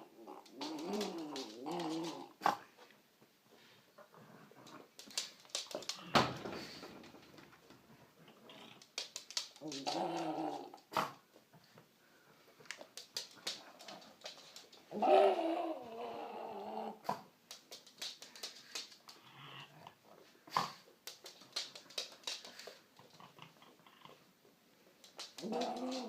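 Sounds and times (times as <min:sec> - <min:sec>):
dog whining and grumbling: 0:14.9 - 0:17.1, 0:25.4 - 0:26.0.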